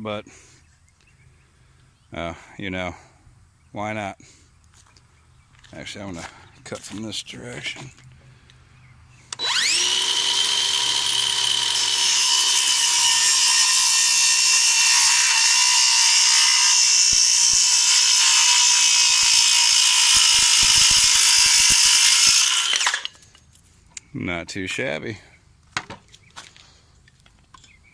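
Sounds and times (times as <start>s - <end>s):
circular saw cutting wood: 9.4s - 23.2s.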